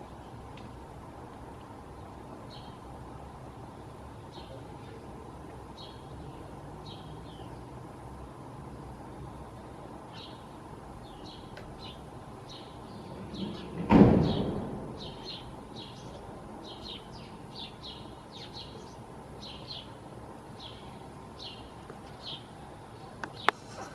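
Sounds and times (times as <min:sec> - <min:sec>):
steady background hiss: 0:00.0 - 0:23.9
small bird chirping: 0:10.1 - 0:20.0
loud bump: 0:13.1 - 0:16.0.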